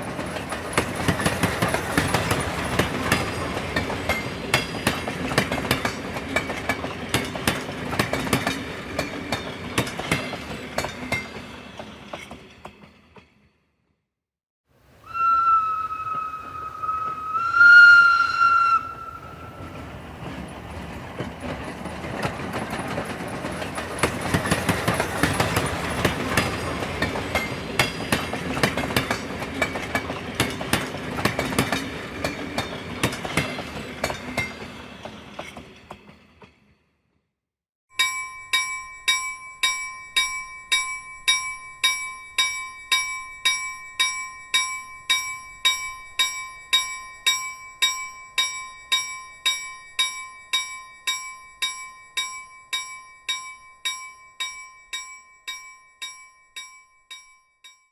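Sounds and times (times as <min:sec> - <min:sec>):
train passing rumble: 0:00.0 - 0:12.6, 0:14.8 - 0:36.5
train whistle toot: 0:15.0 - 0:19.9.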